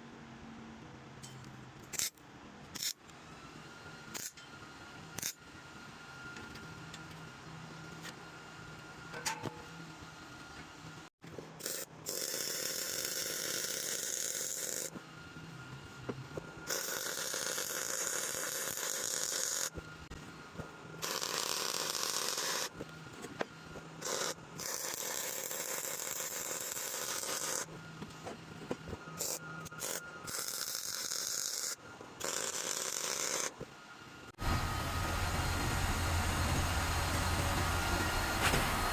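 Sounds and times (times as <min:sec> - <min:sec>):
welding arc crackling: 0:16.7 - 0:19.8, 0:21.0 - 0:22.7, 0:24.0 - 0:27.7, 0:29.2 - 0:33.5.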